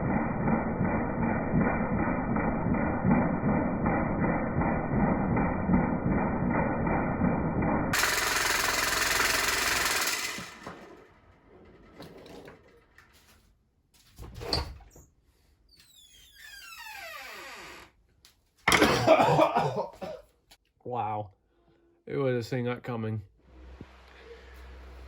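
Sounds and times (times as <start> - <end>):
fan motor whine winding down: 0.0 - 12.0, 23.4 - 25.0.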